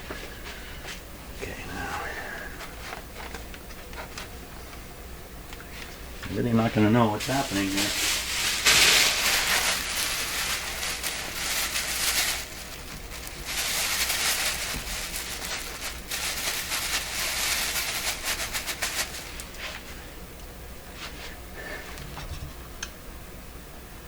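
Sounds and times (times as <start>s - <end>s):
cloth rags rustling: 5.8s - 20.1s.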